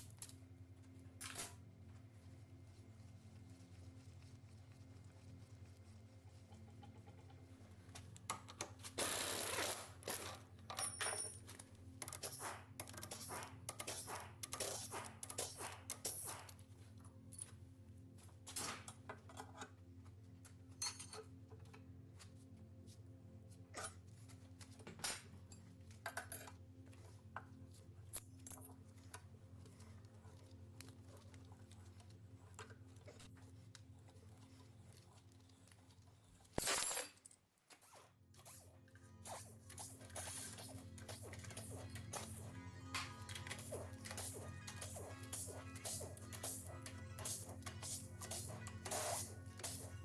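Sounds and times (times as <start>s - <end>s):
metal tools clinking: 10.7s - 11.5s.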